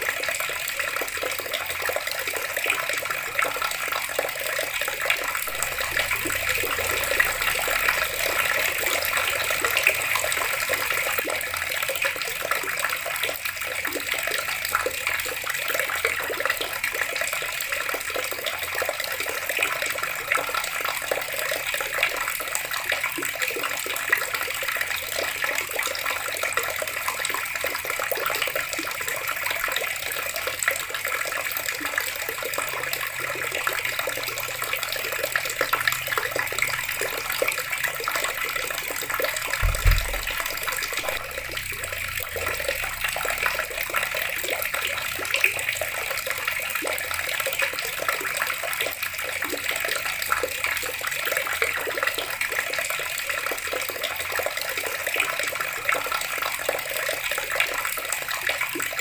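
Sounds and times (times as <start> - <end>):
water running from a tap: 0.0 - 59.0
low thump: 39.6 - 42.4.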